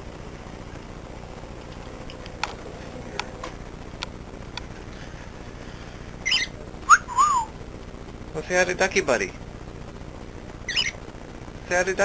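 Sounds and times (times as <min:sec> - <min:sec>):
scratchy background hiss: 0:00.0 - 0:12.0
high wavering bird call: 0:06.2 - 0:07.6.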